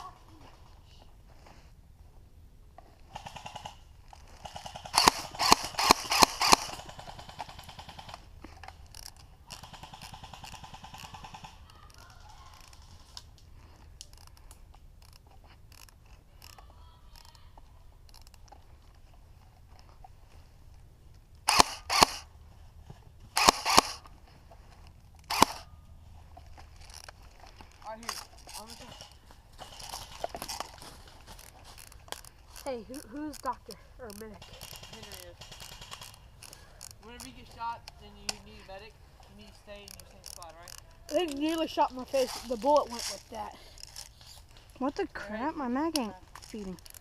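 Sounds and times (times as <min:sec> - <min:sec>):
airsoft guns firing full-auto: 0:03.1 - 0:08.4, 0:09.4 - 0:11.6, 0:21.5 - 0:22.3, 0:23.4 - 0:24.1, 0:25.3 - 0:25.7, 0:34.4 - 0:36.5
loud sharp cracks: 0:04.4 - 0:08.3, 0:21.5 - 0:22.3, 0:23.4 - 0:24.1, 0:25.3 - 0:25.7.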